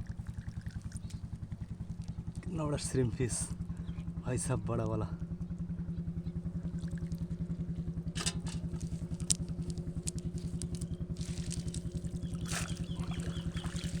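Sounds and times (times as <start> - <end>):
small engine thumping: 8.1 - 13.6
rustling: 8.4 - 12.4.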